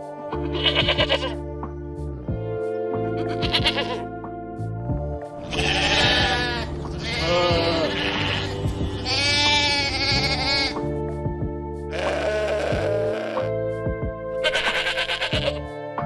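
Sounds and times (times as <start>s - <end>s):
background music: 0.0s - 16.0s
sheep bleating: 0.4s - 1.4s, 3.2s - 4.1s, 5.4s - 10.8s, 11.9s - 13.6s, 14.4s - 15.7s.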